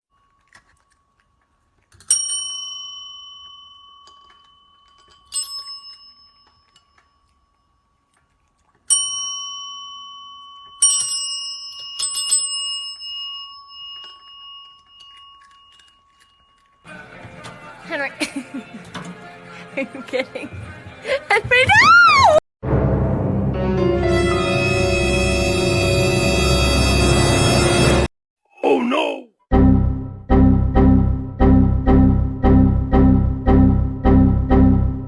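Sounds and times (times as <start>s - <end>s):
small metal bell ringing: 2.0s - 8.0s, 8.9s - 16.9s.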